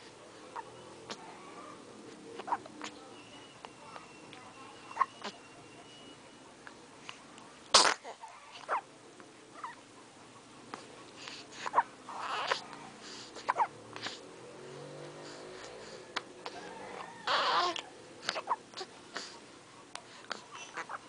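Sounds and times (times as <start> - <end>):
sharp sneeze: 7.7 - 8.1
snuffly breaths: 10.8 - 20.9
short squeaky cries: 12.2 - 12.6, 17.2 - 17.9.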